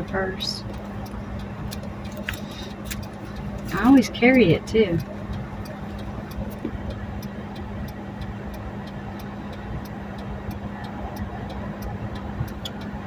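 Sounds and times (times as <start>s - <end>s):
car engine idling: 0.0s - 13.0s
light even ticking: 0.0s - 13.0s.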